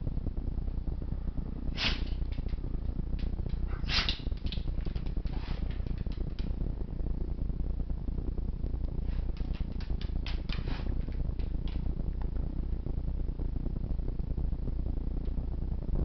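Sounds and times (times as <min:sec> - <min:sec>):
dog snorting: 0:01.7 - 0:02.2, 0:03.6 - 0:05.8
dog sneezing: 0:01.8 - 0:02.2, 0:03.7 - 0:04.2.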